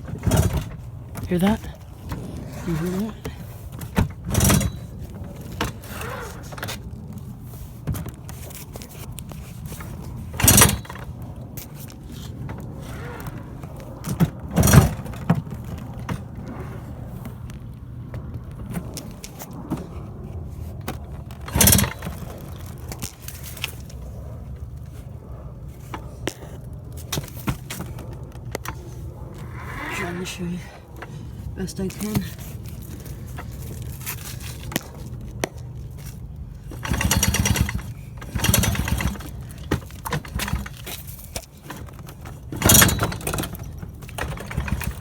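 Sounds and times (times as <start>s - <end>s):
moped engine running: 9.8s - 11.2s, 21.3s - 23.9s, 36.0s - 45.0s
engine ticking: 21.3s - 24.0s, 36.5s - 45.0s.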